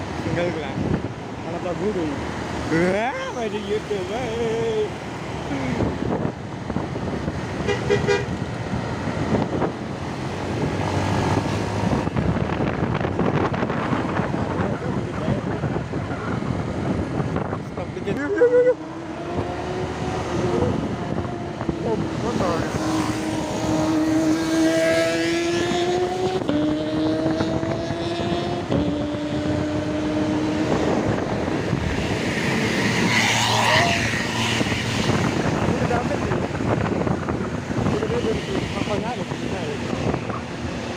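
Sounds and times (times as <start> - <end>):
road traffic and engine noise: 0.0 - 40.9
two-tone vehicle horn toots: 7.6 - 8.4.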